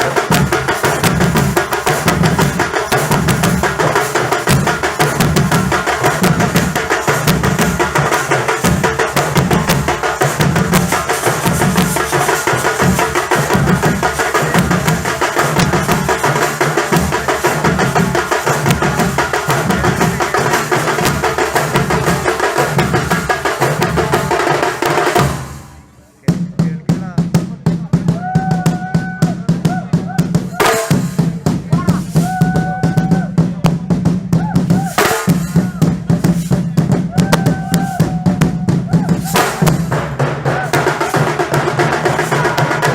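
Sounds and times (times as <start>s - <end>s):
deep drum beats: 0.0s - 42.9s.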